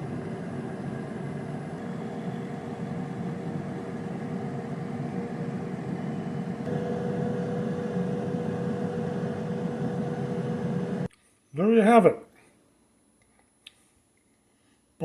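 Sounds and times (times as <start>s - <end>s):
air fryer fan hum: 0.0s - 11.1s
faint held tone: 5.0s - 11.1s.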